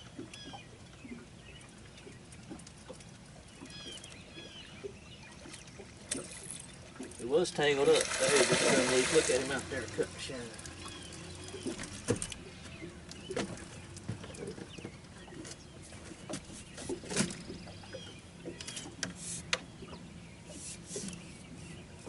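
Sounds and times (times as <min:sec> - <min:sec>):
birds calling: 0:00.0 - 0:22.0.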